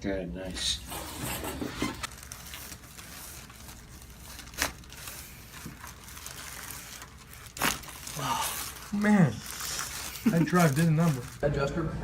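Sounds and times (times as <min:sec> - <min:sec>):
faint rustling and crinkling: 0:01.0 - 0:11.4.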